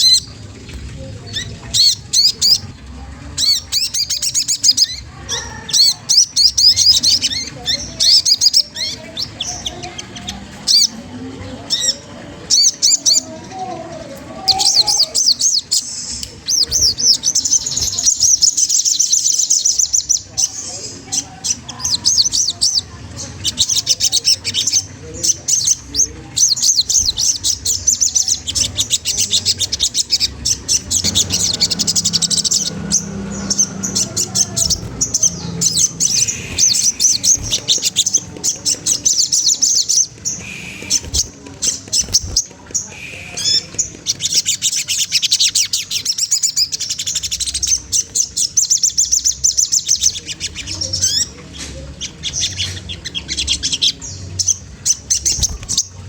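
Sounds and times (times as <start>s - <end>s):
bird chattering trill: 14.4s - 51.3s.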